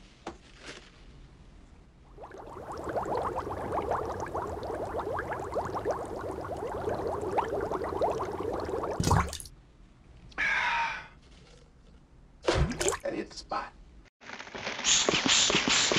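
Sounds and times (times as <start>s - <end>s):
liquid gurgling and bubbling: 2.1s - 9.5s.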